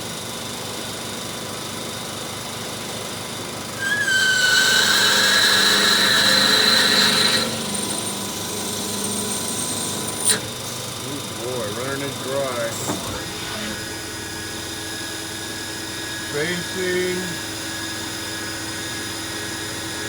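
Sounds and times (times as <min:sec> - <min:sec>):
high-pitched drilling whine: 0:00.0 - 0:20.0
machine hum: 0:03.8 - 0:18.1.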